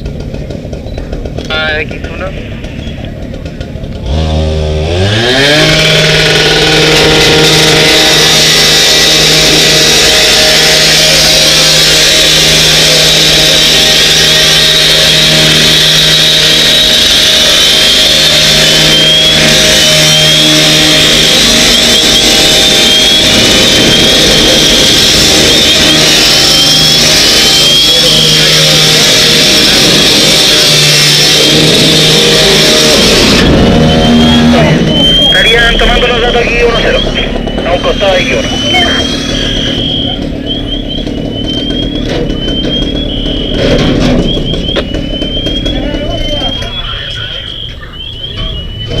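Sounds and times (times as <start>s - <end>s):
engine running loudly: 0.0s - 49.0s
short rising chirps: 33.5s - 49.0s.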